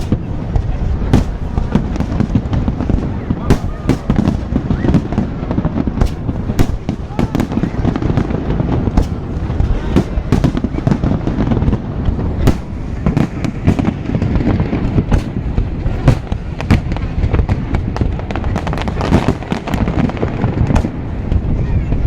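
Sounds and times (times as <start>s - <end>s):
continuous low rumble: 0.0s - 22.0s
firework bangs: 0.0s - 22.0s.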